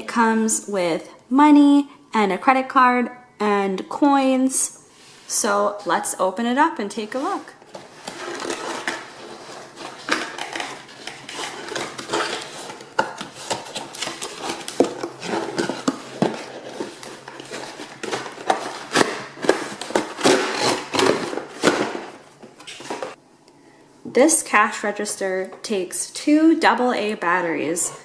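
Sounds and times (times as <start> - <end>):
packaging rustling: 7.2 - 23.2
plastic parts clattering: 7.9 - 23.2.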